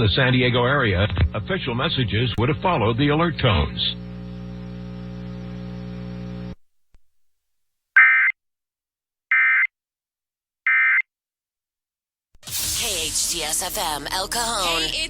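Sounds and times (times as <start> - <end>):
buzzy data bursts: 12.4 - 15.0.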